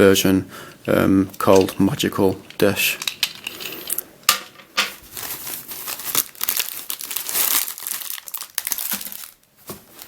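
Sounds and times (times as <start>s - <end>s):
packaging crinkling and rustling: 4.8s - 10.0s.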